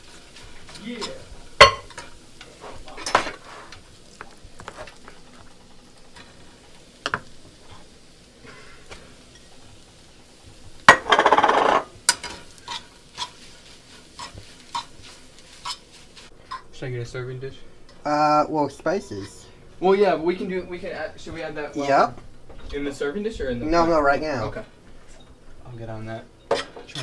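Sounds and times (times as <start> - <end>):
loud kitchen noise: 0.0 - 27.0
utensils and dishes clinking: 0.7 - 3.8, 10.9 - 13.4.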